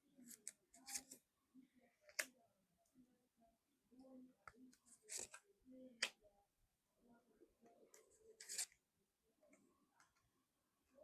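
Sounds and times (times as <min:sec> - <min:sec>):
cards being shuffled: 0:05.0 - 0:05.4, 0:08.4 - 0:08.7.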